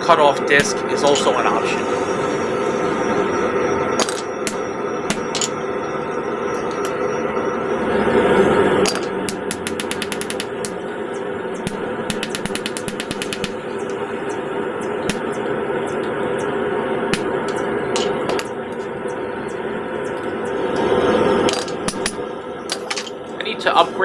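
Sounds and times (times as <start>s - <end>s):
power hammer blows on hot steel: 0.0s - 3.3s, 9.3s - 10.8s, 11.6s - 14.0s, 15.0s - 16.1s, 17.1s - 18.5s
steady background rush: 0.0s - 24.0s.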